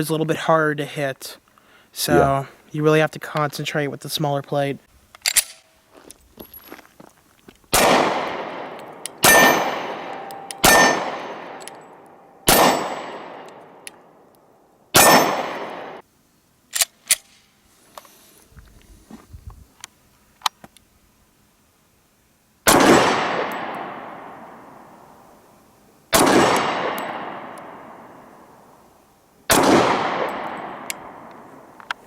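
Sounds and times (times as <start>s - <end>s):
pistol shots echoing: 7.8s - 13.8s, 15.0s - 16.0s, 22.7s - 24.5s, 26.1s - 28.5s, 29.5s - 31.7s
steel target ringing: 9.2s - 13.4s.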